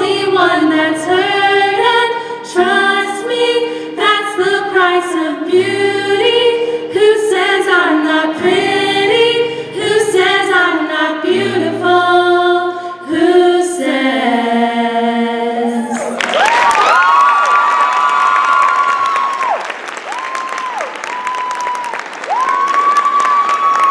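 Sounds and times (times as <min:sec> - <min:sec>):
women singing in harmony: 0:00.0 - 0:16.2
audience applause and cheering: 0:15.8 - 0:23.9
high-pitched screams: 0:15.8 - 0:23.9.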